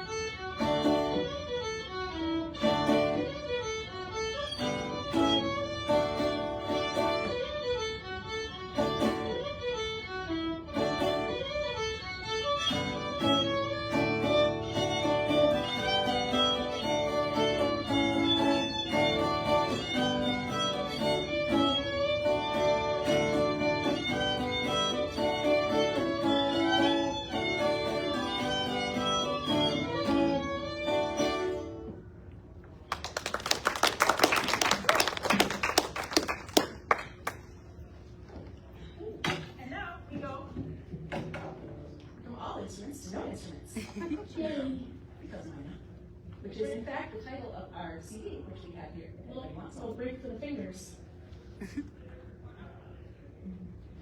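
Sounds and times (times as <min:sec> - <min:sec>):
fiddle melody: 0:00.0 - 0:32.0
plucked guitar: 0:00.0 - 0:32.0
audience applause: 0:32.9 - 0:37.6.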